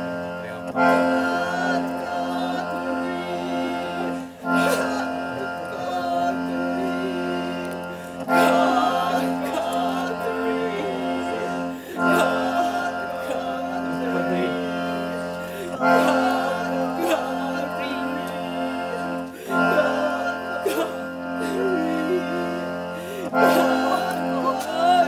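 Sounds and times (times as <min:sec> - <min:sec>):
person singing: 0:00.0 - 0:25.0
steady held drone: 0:00.0 - 0:25.0.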